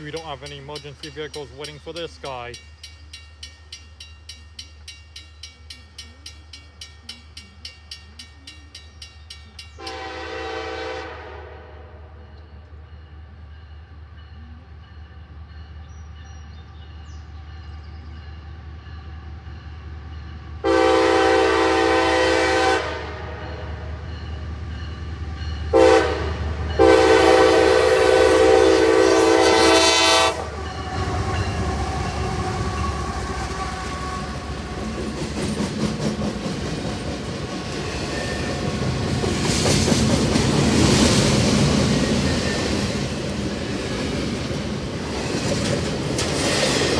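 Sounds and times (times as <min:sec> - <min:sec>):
freight train rumbling past: 0:00.0 - 0:46.9
locomotive air horn: 0:09.8 - 0:12.3, 0:20.6 - 0:23.9, 0:25.7 - 0:34.7.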